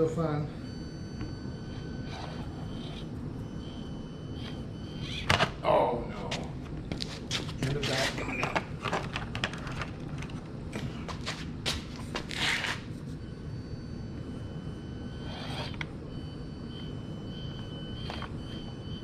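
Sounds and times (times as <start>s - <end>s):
small electric motor whining: 14.5s - 19.0s.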